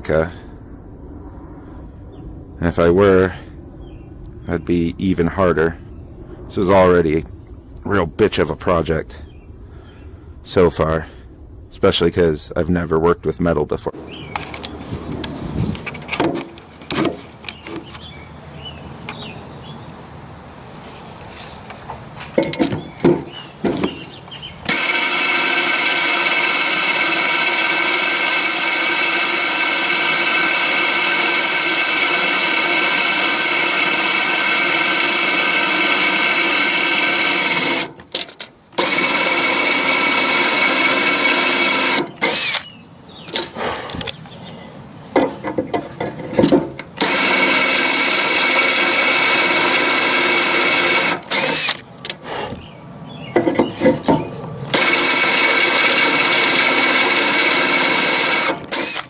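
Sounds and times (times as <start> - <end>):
handling knocks and clicks: 14.3 - 18.1, 21.0 - 24.8, 37.9 - 38.6, 45.1 - 47.0, 53.3 - 54.8
electric drill whining: 24.6 - 38.2, 38.8 - 42.7, 47.0 - 52.6, 54.7 - 59.0.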